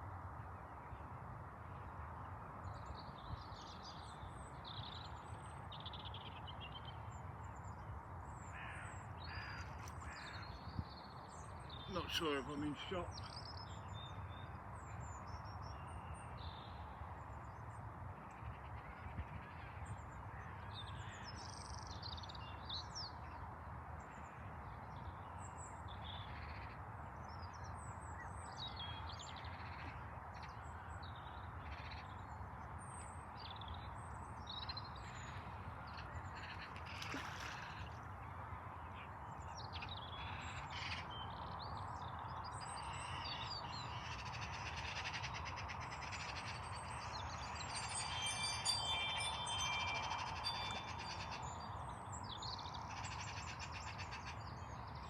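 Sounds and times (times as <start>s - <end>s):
birds calling: 42.7s - 54.8s.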